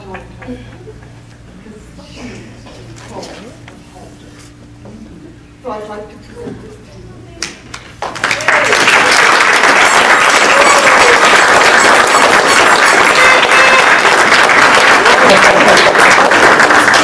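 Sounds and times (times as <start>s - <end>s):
audience applauding: 8.0s - 17.0s.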